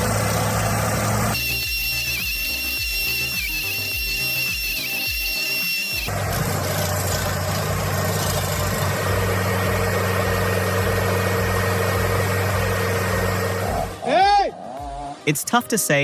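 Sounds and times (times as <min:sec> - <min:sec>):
heavy machine engine humming: 0:00.0 - 0:01.6, 0:06.1 - 0:14.0.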